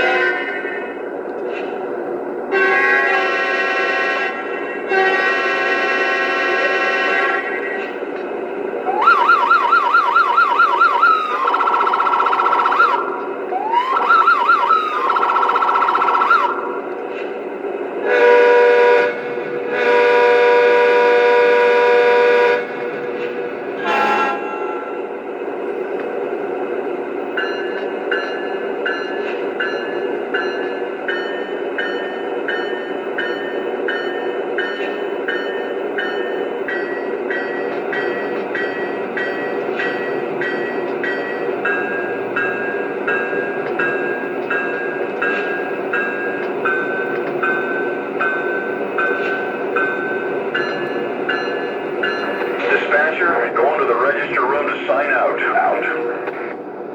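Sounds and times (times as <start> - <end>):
train horn blasts: 0.0 - 1.0, 2.5 - 8.0, 18.0 - 23.1, 23.7 - 25.1
warbling siren-like tone: 8.9 - 16.9
locomotive bell ringing: 27.1 - 55.6
locomotive engine rumble: 35.8 - 56.9.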